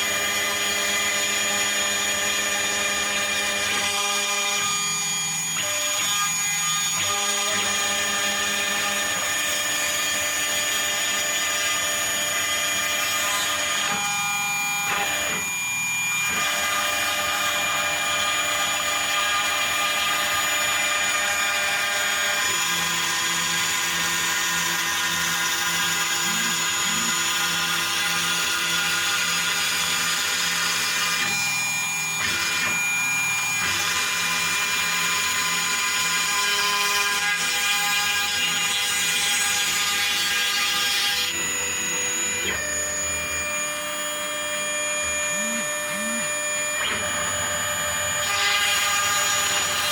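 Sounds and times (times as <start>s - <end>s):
spindle high-pitched whine: 0.0s - 37.2s, 37.8s - 49.9s
stepper motors humming: 41.9s - 49.6s.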